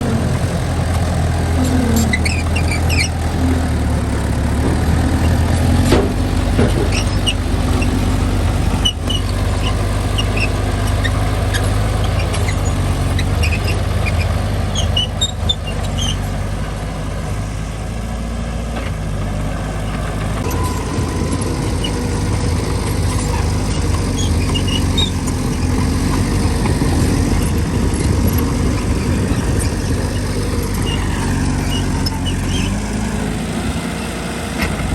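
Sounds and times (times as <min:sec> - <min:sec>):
diesel engine running under load: 0:00.0 - 0:34.9
short high squeaks: 0:01.6 - 0:03.2, 0:06.7 - 0:08.1, 0:08.8 - 0:16.3, 0:20.4 - 0:32.9.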